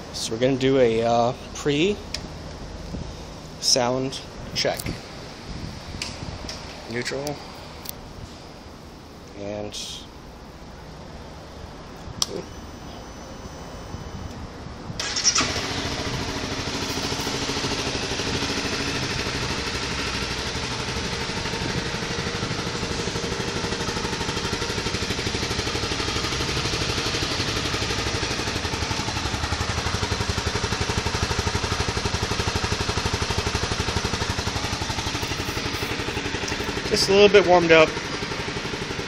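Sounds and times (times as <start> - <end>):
motorcycle engine idling: 15.0 - 39.0.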